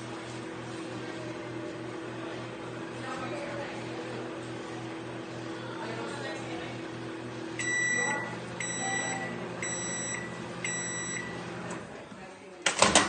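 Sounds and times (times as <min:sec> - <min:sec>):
microwave oven humming: 0:00.0 - 0:13.0
microwave alert beeps: 0:07.6 - 0:11.5.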